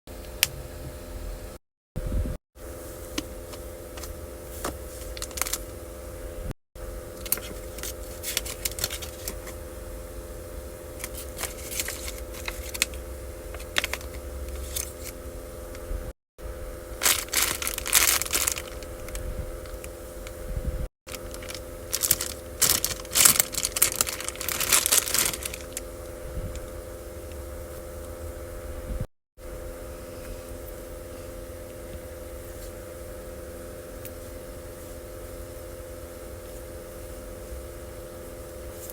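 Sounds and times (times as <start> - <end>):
steady low hum: 0.1 - 38.9
plastic packaging crinkling and tearing: 5.0 - 5.6, 7.2 - 9.6, 11.0 - 15.2, 17.0 - 20.4, 21.1 - 25.9.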